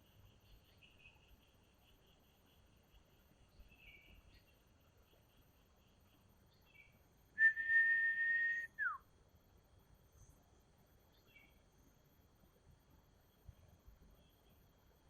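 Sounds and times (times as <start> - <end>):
bird chirps: 0.0 - 7.7
faint insects humming: 0.0 - 15.0
loud long bird whistle: 7.4 - 9.0.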